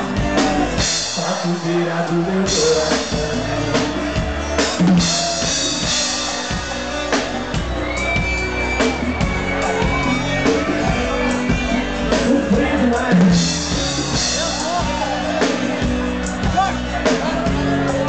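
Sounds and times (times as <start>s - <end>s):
crowd voices: 0.0s - 18.0s
live band playing: 0.0s - 18.0s
drum kit hits: 2.4s - 17.8s.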